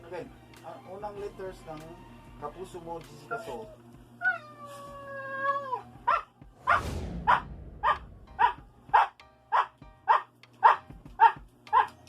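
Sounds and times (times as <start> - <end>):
dog howling: 3.2 - 6.3
dog barking: 6.0 - 12.0.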